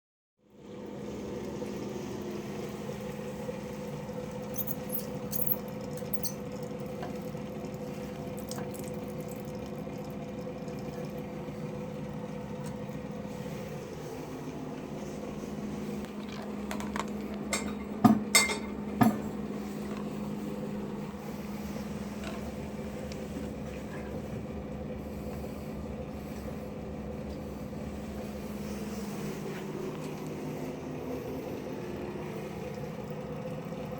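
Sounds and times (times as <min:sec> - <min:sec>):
steady hum: 0:00.5 - 0:33.9
water running from faucet: 0:00.8 - 0:14.1, 0:28.0 - 0:33.9.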